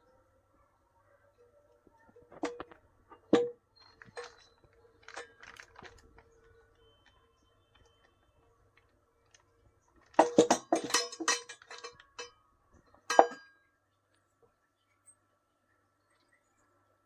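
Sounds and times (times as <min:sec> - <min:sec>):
metal parts clinking: 0:02.4 - 0:06.2, 0:10.0 - 0:12.3.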